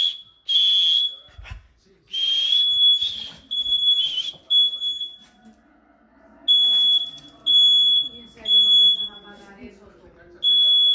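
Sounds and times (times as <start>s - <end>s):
smoke alarm beeping: 0.0s - 1.3s, 2.2s - 5.3s, 6.5s - 9.4s, 10.4s - 10.9s.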